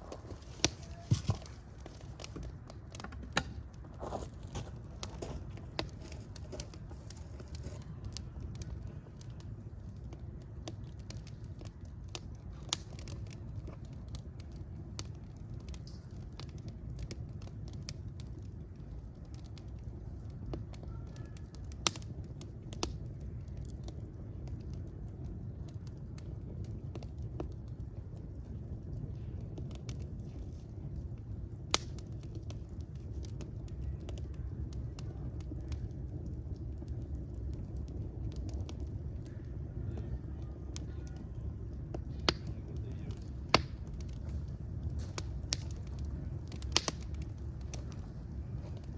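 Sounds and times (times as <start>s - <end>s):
fire crackling and popping: 0.0s - 48.9s.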